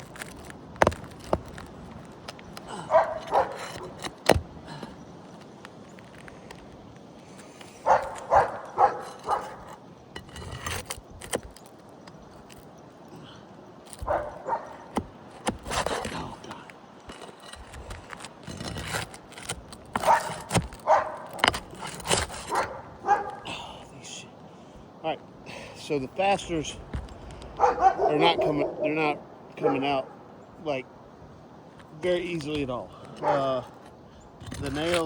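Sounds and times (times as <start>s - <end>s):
sharp clicks and scrapes: 0.0s - 12.7s, 13.8s - 22.8s, 32.3s - 35.0s
dog barking: 2.9s - 3.6s, 7.8s - 9.6s, 14.1s - 14.8s, 20.0s - 21.3s, 22.5s - 23.4s, 27.6s - 28.9s, 29.6s - 29.8s, 33.2s - 33.4s.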